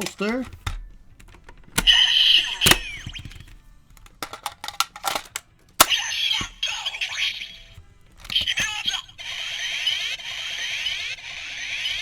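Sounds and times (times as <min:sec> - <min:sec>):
plastic toy clicks: 0:00.0 - 0:09.6
toy electronic sound effects: 0:01.8 - 0:03.5, 0:05.8 - 0:12.0.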